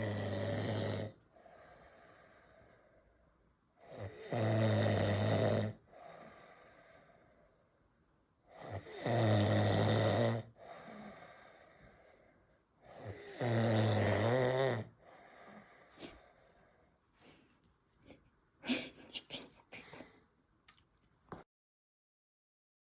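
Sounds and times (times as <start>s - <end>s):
man snoring loudly: 0.0s - 1.2s, 3.9s - 5.8s, 8.6s - 10.5s, 12.9s - 14.9s
quiet breaths: 0.0s - 20.5s.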